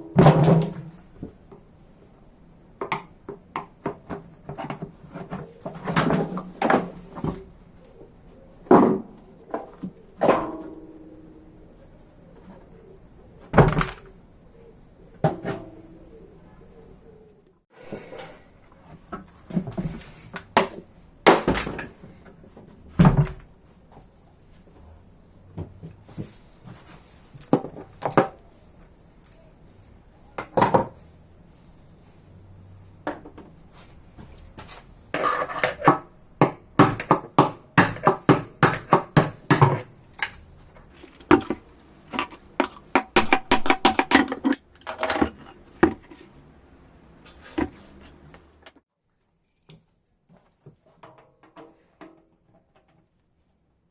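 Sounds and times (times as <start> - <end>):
metal parts clanking: 40.0 - 45.6.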